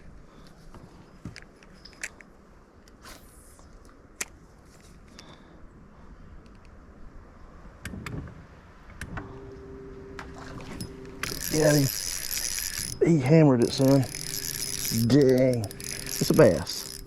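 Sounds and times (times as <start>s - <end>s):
electric trolling motor hum: 9.3s - 17.0s
fishing tackle clicks and knocks: 10.7s - 17.0s.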